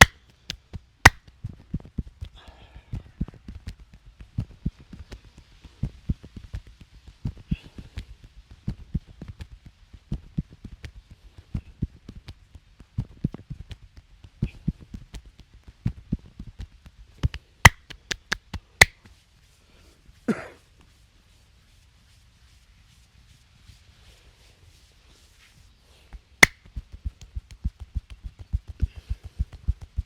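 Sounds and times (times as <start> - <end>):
sharp snaps: 0.0 - 1.3, 17.2 - 19.0, 26.4 - 28.2
hands tapping and patting: 17.2 - 19.0.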